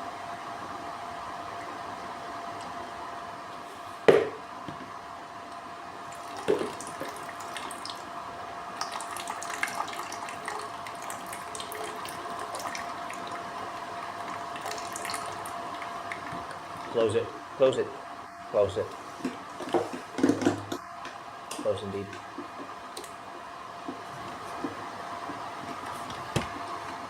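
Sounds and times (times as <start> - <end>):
steady hum with thin tone: 0.0 - 27.0
water trickling and dripping: 6.1 - 8.1, 8.8 - 17.0.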